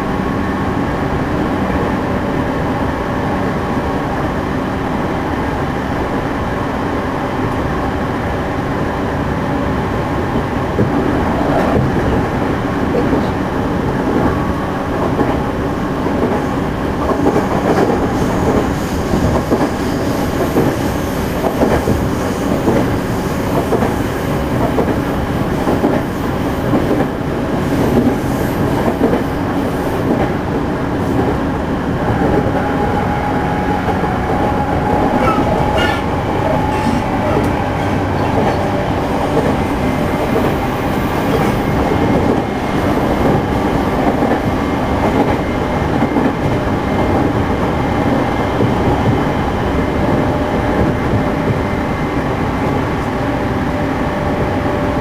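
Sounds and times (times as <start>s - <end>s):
train wheels rumbling on rail: 0.0s - 55.0s
rail-joint clicks: 33.8s - 46.6s.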